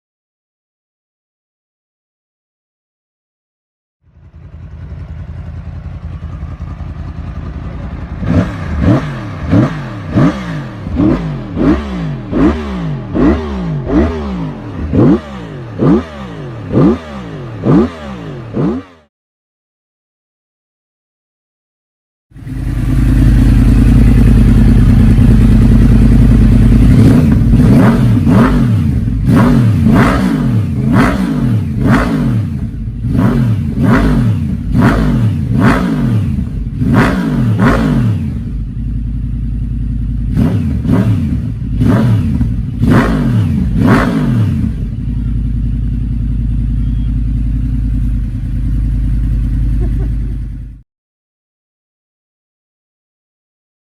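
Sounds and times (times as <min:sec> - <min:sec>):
motorcycle engine idling: 0:04.0 - 0:16.8, 0:22.4 - 0:50.8
motorcycle throttle blips: 0:22.4 - 0:50.8.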